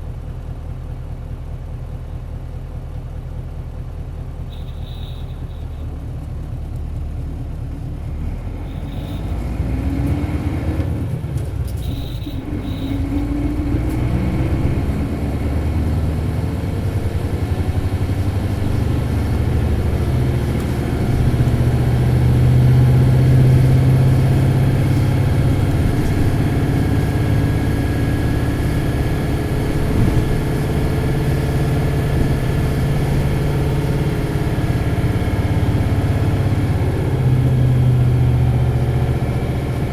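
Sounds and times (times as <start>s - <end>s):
diesel bus engine accelerating: 0.0s - 39.9s.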